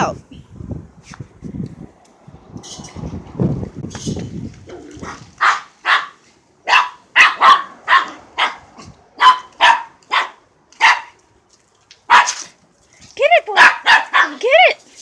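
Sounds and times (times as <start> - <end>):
dog barking: 5.0 - 11.2, 12.1 - 12.4, 13.6 - 14.4.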